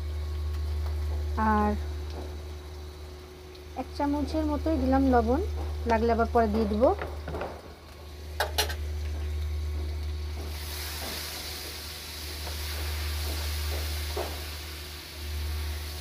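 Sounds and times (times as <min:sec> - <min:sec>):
onions sizzling in oil: 0:00.0 - 0:16.0
steady low hum: 0:00.0 - 0:16.0.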